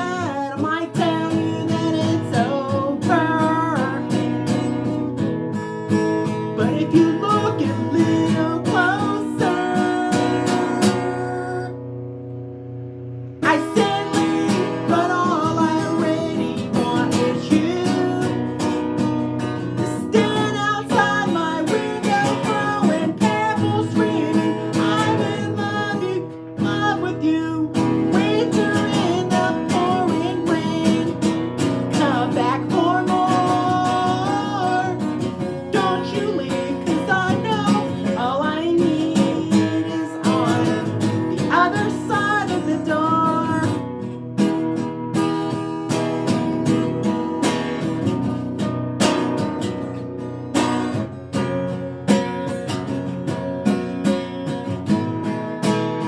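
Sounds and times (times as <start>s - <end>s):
person singing: 0.0s - 4.6s, 6.6s - 11.8s, 13.4s - 18.8s, 19.8s - 43.9s
acoustic guitar strumming: 0.0s - 56.0s.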